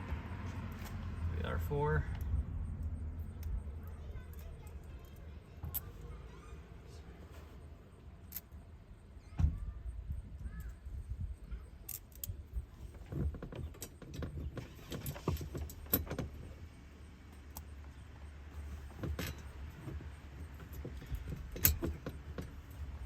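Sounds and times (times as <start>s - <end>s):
metal hardware clinking: 3.2s - 6.0s, 18.6s - 23.0s
sharp clicks and knocks: 18.8s - 23.0s.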